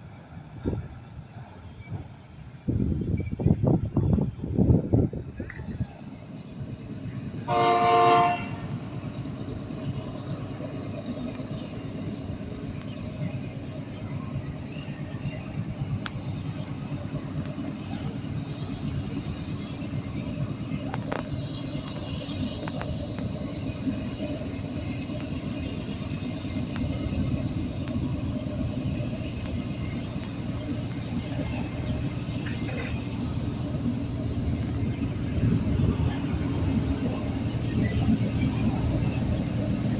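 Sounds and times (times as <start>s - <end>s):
train rumbling: 0.0s - 39.9s
thin high whine: 0.7s - 6.3s
locomotive air horn: 7.5s - 8.7s.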